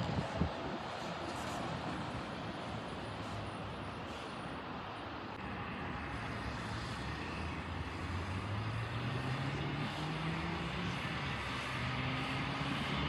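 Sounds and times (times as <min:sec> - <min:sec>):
aircraft engine rushing hum: 0:05.4 - 0:13.0.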